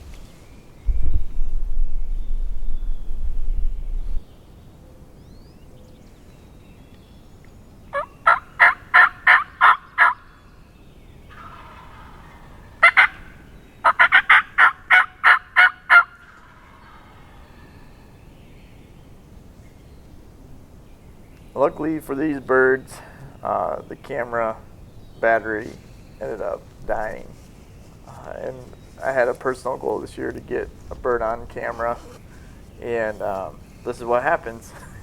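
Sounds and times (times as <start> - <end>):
low rumble: 0.8 - 4.3
turkey yelps: 8.0 - 10.2, 11.3 - 17.5.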